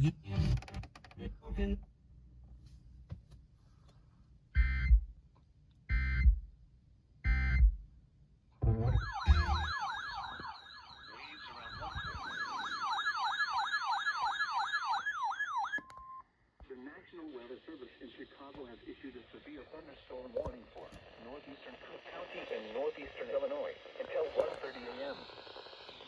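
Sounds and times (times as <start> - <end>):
warbling alert tone: 8.7 - 12.9.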